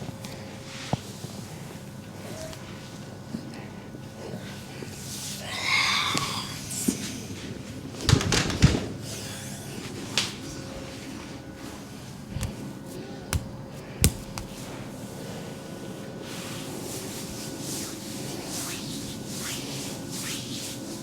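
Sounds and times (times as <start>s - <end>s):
hands rubbing oiled skin: 12.3s - 14.8s.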